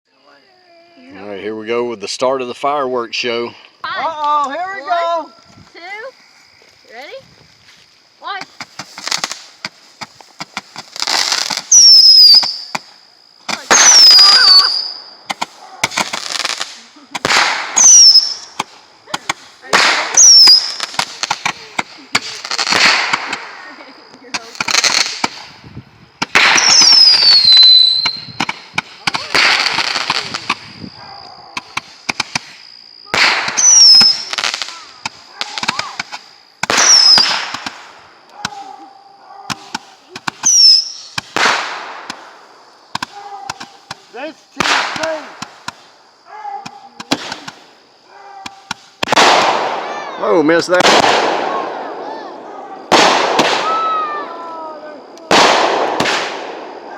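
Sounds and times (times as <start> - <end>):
fireworks hissing rush: 0.5 - 38.9, 39.5 - 56.9
fireworks crackling pops: 3.6 - 38.8, 39.4 - 56.9
fireworks whistles: 8.2 - 38.8, 39.5 - 56.9
short falling whistle: 11.7 - 12.7
thin high whistle: 11.7 - 12.8, 17.8 - 18.5, 20.2 - 20.9, 26.6 - 28.4, 33.6 - 34.4, 40.4 - 41.2.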